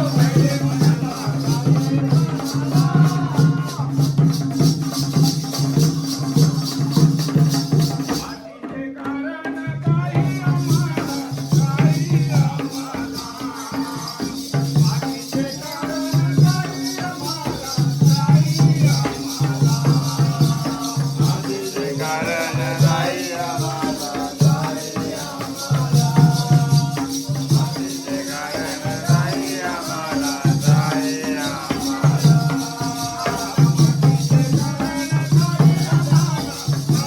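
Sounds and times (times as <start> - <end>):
repeating drum pattern: 0.0 - 37.0
high jingle: 10.4 - 37.0.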